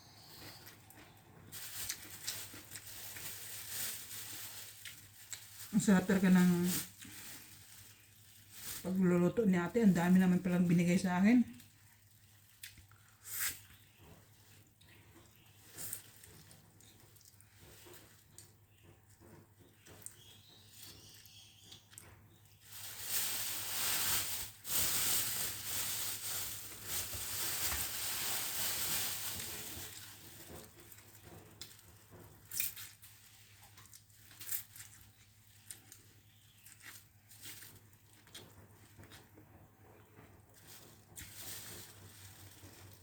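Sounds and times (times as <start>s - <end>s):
plastic bag rustling: 1.4s - 12.6s, 22.6s - 39.3s, 40.4s - 43.0s
wet chewing with smacks: 14.6s - 18.6s, 33.4s - 37.3s.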